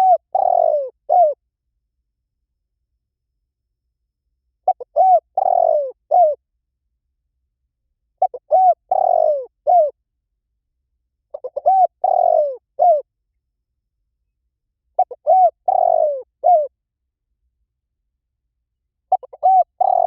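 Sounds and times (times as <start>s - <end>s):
dove cooing: 0.0s - 1.4s, 4.6s - 6.4s, 8.2s - 10.0s, 11.3s - 13.1s, 15.0s - 16.7s, 19.1s - 20.0s.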